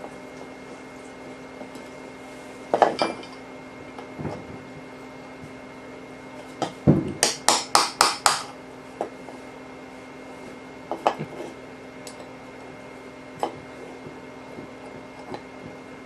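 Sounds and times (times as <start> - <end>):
hammer tapping steel punch: 7.2 - 8.5.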